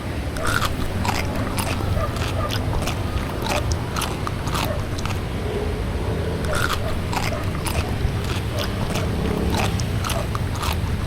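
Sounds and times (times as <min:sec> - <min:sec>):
person chewing food: 0:00.4 - 0:05.3, 0:06.4 - 0:11.0.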